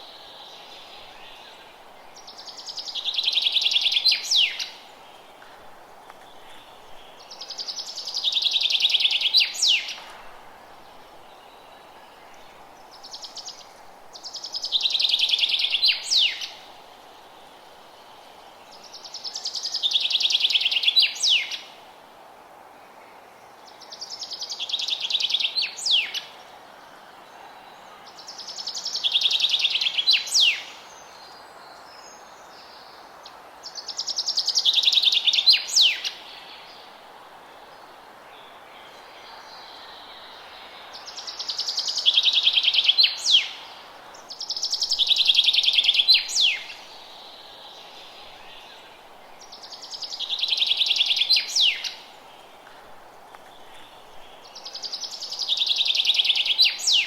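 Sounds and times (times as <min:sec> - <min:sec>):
songbird trilling song: 0:00.0 - 0:04.8, 0:06.2 - 0:10.0, 0:11.2 - 0:16.7, 0:18.8 - 0:21.7, 0:23.9 - 0:26.3, 0:28.2 - 0:32.9, 0:33.7 - 0:36.8, 0:38.4 - 0:52.6, 0:53.3 - 0:57.0
faint steady hiss: 0:00.0 - 0:57.0.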